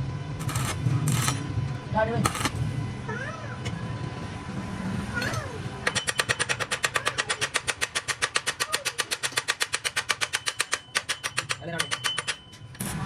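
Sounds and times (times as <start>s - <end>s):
rapid mechanical clicking: 0.4s - 1.4s, 5.9s - 12.5s.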